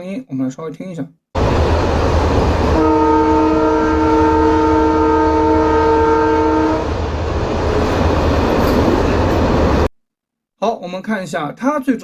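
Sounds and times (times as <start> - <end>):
road traffic rumble: 1.4 - 9.9
vehicle horn blast: 2.8 - 6.9.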